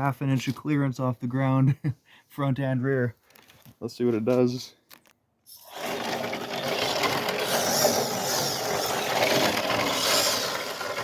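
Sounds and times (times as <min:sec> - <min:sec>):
tyres on rough ground: 0:00.0 - 0:01.6, 0:02.6 - 0:11.0
electric motor whining: 0:05.6 - 0:11.0.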